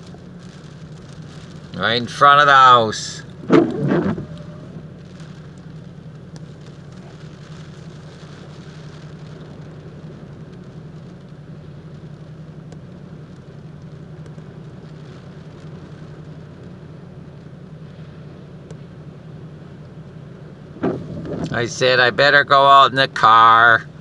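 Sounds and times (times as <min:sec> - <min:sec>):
storm wind rumble: 0:01.2 - 0:05.7, 0:20.6 - 0:24.0
faint ticks: 0:18.6 - 0:18.8.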